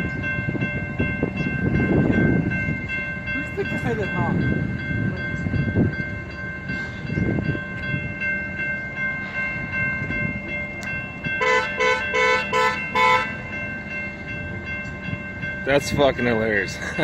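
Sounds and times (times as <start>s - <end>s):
freight train rumbling: 0.0s - 17.0s
steady high ringing tone: 0.0s - 17.0s
car horn beeping: 11.4s - 13.3s.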